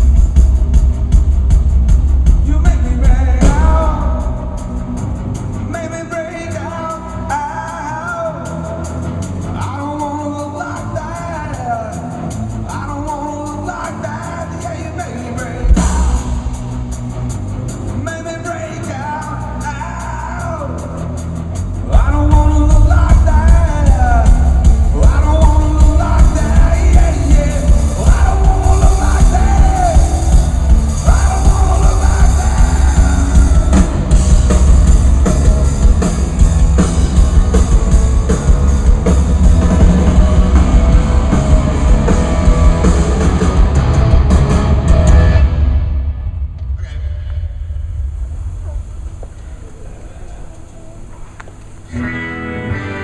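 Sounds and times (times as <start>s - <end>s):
rock band playing live: 0.0s - 46.8s, 51.0s - 53.0s
person singing: 21.9s - 36.0s.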